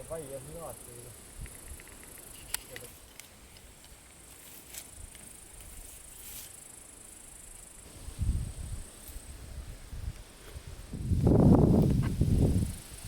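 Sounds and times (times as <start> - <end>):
insects chirring: 0.0 - 13.0.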